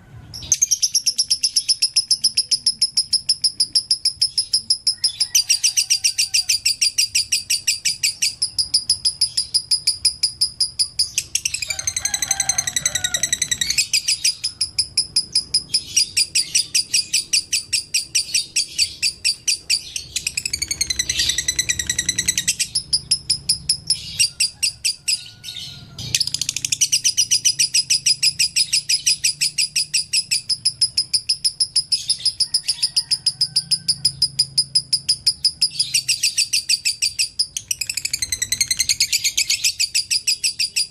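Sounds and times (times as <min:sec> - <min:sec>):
bird warbling chatter: 0:00.3 - 0:40.9
lovebird chirping: 0:00.3 - 0:40.9.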